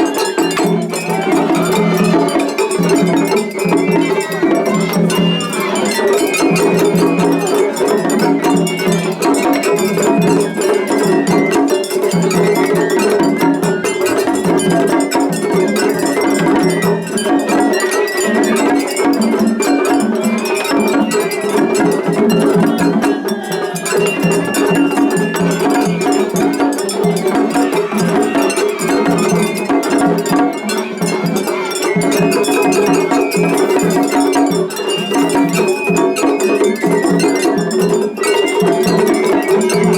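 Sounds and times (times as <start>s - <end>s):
flute: 0.0s - 39.9s
taiko drums: 0.0s - 39.9s.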